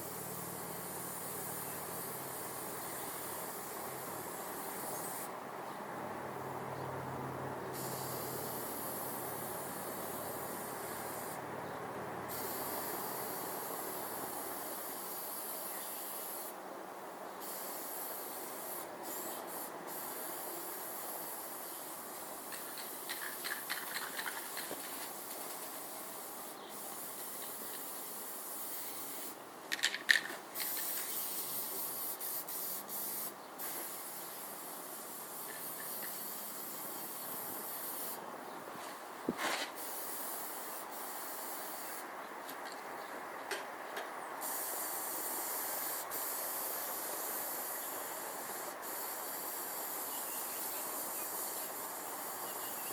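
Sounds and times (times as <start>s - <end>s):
hissing spray: 7.7s - 11.4s, 12.3s - 16.6s, 17.4s - 29.4s, 30.6s - 38.2s, 39.4s - 42.0s, 44.4s - 52.9s.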